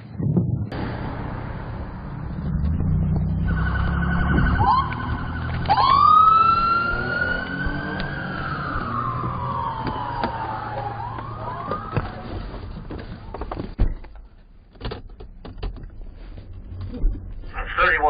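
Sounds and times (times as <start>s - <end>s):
vehicle engine rumble: 0.0s - 18.0s
police siren warbling and wailing: 2.9s - 12.5s.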